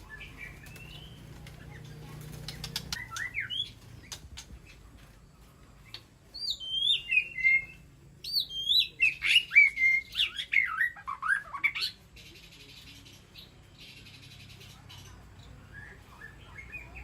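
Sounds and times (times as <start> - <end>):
bird singing whistled phrases: 6.3 - 12.0.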